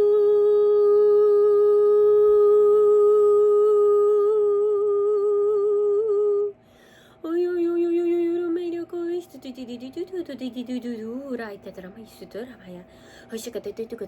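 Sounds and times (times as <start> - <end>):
woman humming long notes: 0.0 - 6.5
woman breathing in: 6.6 - 7.2, 12.9 - 13.3.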